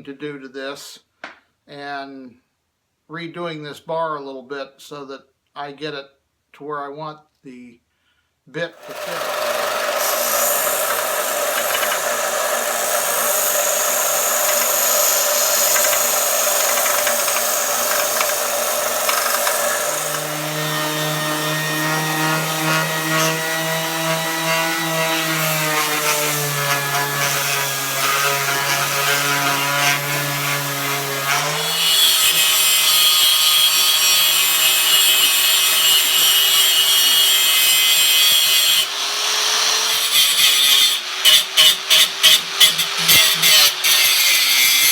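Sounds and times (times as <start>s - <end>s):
angle grinder cutting metal: 8.8s - 44.9s.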